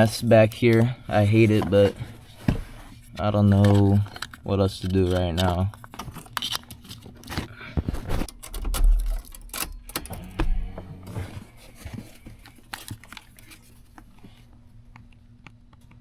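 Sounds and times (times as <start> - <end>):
hands rustling among wiring: 0.0 - 10.1
low steady hum: 0.0 - 16.0.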